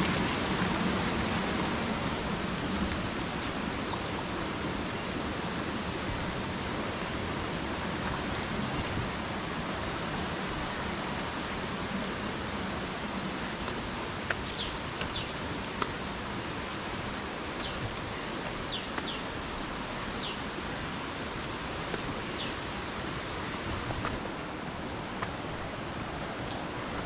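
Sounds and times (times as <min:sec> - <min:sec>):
waterfall rushing: 0:00.0 - 0:27.0
bird chirping: 0:17.6 - 0:19.4.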